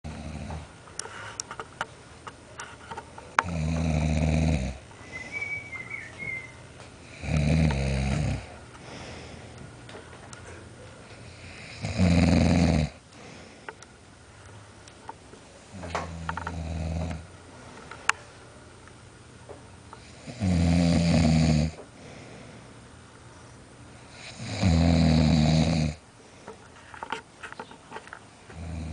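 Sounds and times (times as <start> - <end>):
man snoring loudly: 0.1 - 0.6, 3.4 - 4.8, 7.1 - 8.5, 11.3 - 13.0, 16.1 - 17.2, 20.1 - 21.8, 24.1 - 26.0, 28.6 - 28.9
quiet breathing: 4.7 - 5.6, 7.0 - 11.9, 12.9 - 13.9, 21.6 - 24.4, 26.0 - 27.1
faint whistle: 5.0 - 6.6.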